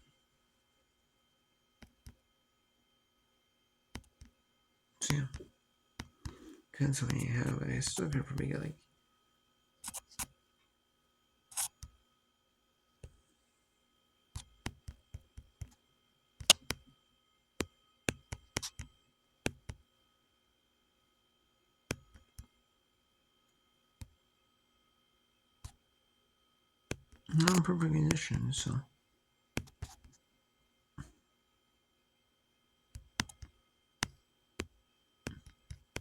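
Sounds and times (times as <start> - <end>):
mouse and keyboard clicks: 9.8 - 10.3, 11.5 - 11.9, 16.4 - 16.8, 18.1 - 18.9, 26.9 - 28.2, 29.6 - 30.1, 33.0 - 34.7.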